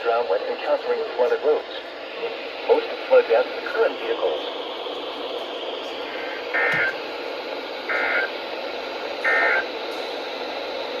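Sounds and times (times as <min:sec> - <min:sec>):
radio receiver hiss: 0:06.1 - 0:07.1.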